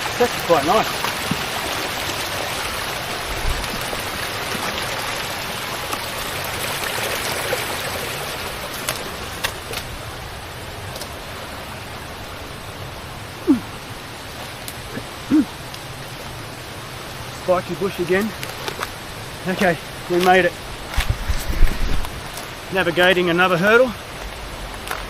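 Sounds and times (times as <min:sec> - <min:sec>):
creek water rushing: 0:00.0 - 0:25.0
brief vocal sound: 0:13.4 - 0:13.7, 0:14.9 - 0:15.5.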